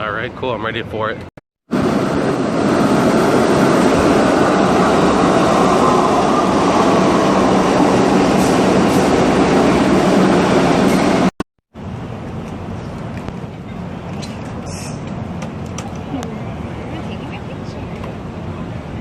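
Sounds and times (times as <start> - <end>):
subway train rumble with whine: 0.0 - 19.0.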